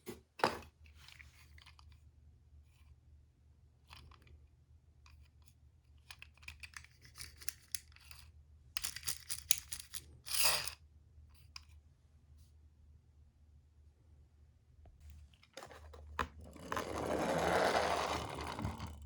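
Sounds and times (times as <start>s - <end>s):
toy cars clicking on cardboard: 6.0s - 10.4s, 15.6s - 19.0s.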